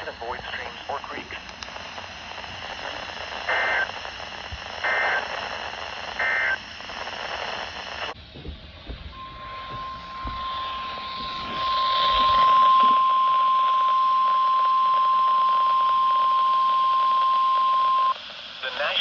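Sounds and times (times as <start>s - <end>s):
radio hiss: 0.0s - 8.2s, 9.1s - 16.6s, 17.2s - 19.0s
steady alarm tone: 8.9s - 14.8s.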